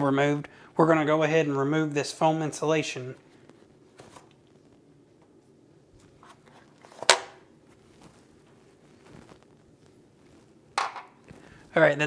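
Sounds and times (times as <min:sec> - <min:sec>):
foam insulation rustling: 0:07.5 - 0:11.8.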